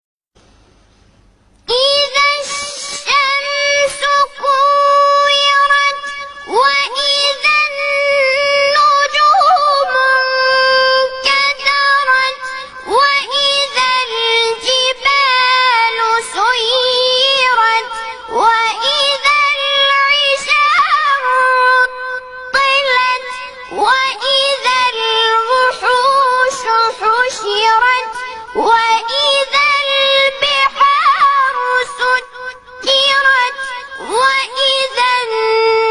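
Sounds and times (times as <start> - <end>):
child chanting recitation: 1.7 - 35.9.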